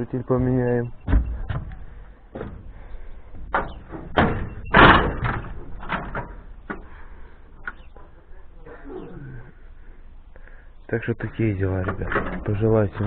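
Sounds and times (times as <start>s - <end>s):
knocks and thuds: 0.4s - 2.7s, 3.4s - 6.9s.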